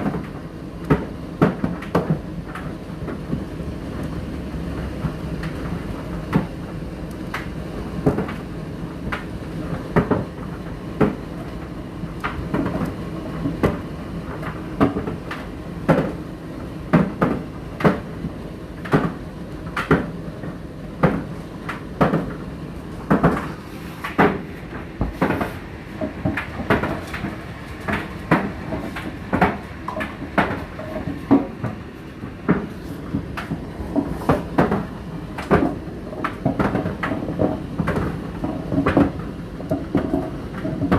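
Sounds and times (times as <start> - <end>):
tumble dryer humming: 22.6 - 38.9.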